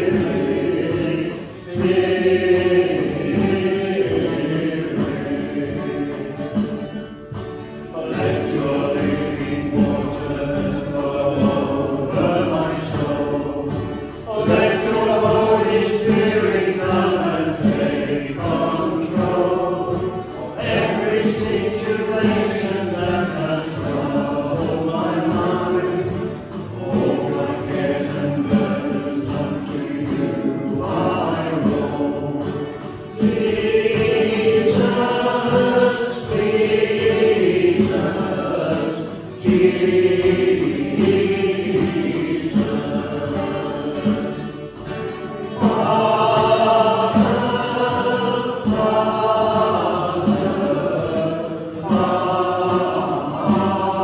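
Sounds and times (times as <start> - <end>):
congregation singing a hymn: 0.0 - 54.0.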